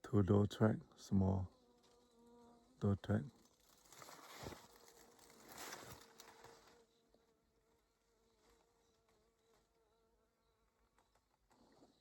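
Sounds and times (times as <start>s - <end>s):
flying insect buzzing: 1.5s - 2.8s, 3.4s - 10.4s.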